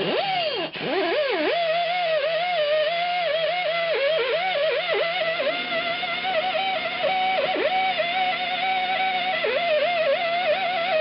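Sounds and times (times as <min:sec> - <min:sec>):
wavering lead melody: 0:02.8 - 0:11.0.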